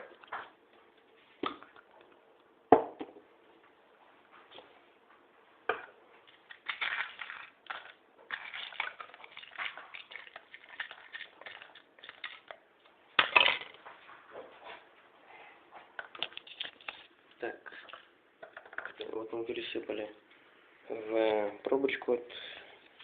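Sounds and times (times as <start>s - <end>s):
foil balls crinkling and rattling: 6.2s - 12.6s, 16.0s - 19.1s.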